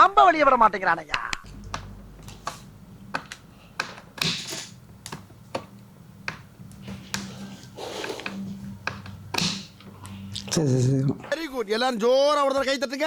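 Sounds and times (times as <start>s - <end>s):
sharp clicks and taps: 1.2s - 7.4s, 8.0s - 10.2s.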